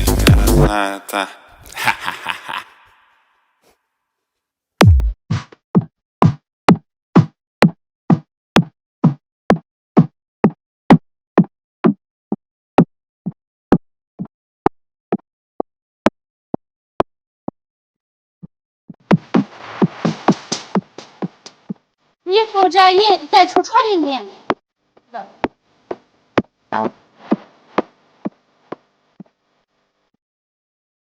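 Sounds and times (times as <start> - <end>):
electronic kick drum beat: 0.0 - 0.7, 4.8 - 12.0.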